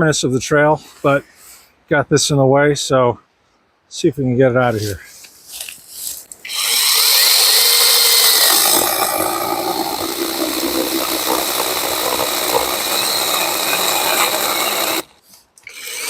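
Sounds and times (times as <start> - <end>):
chainsaw cutting wood: 6.4 - 16.0.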